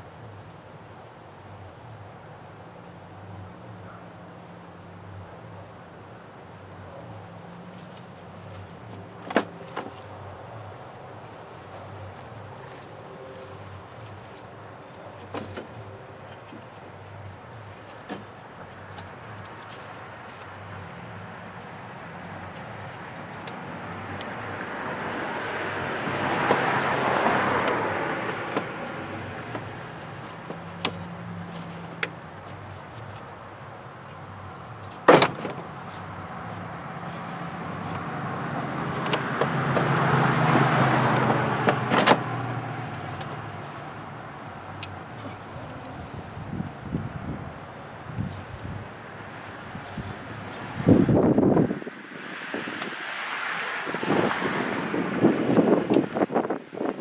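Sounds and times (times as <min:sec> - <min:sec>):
road vehicles passing: 0:00.0 - 0:57.0.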